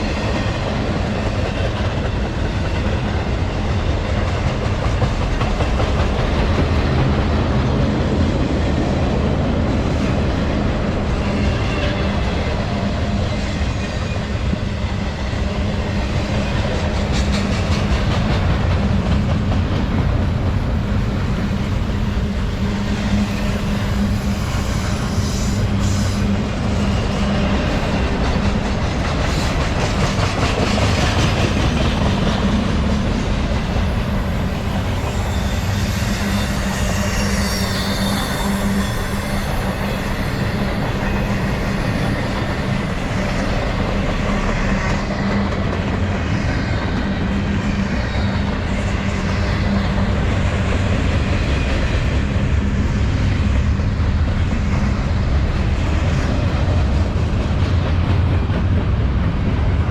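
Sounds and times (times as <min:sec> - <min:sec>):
freight train rolling past: 0:00.0 - 0:59.9
wheel squeals: 0:35.2 - 0:42.9.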